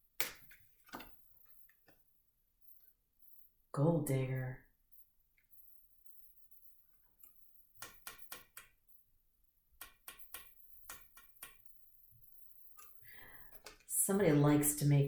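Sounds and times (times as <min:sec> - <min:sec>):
cards clicking and tapping: 0:00.2 - 0:01.2, 0:07.8 - 0:08.8, 0:09.8 - 0:11.7.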